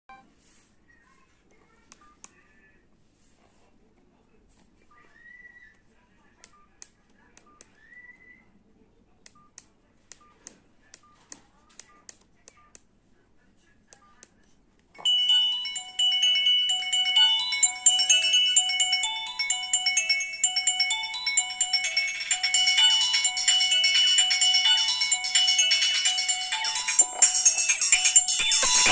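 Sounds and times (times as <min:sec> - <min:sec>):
keypad clicks with beeps: 0:06.4 - 0:07.8, 0:09.3 - 0:12.9
phone ringtone melody: 0:15.0 - 0:28.9.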